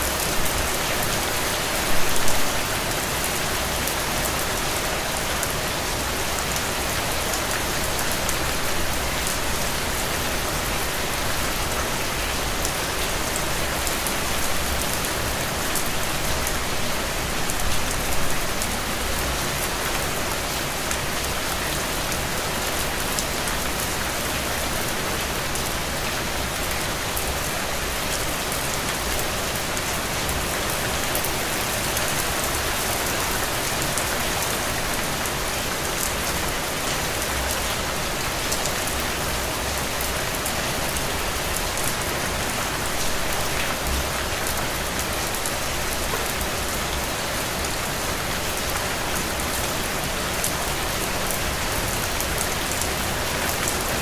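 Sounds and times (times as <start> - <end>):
heavy rain falling on ground: 0.0 - 54.0.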